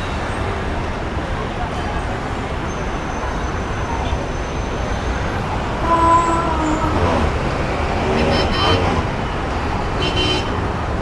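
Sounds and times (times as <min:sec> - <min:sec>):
street traffic rumble: 0:00.0 - 0:11.0
vehicle horn: 0:05.6 - 0:10.7.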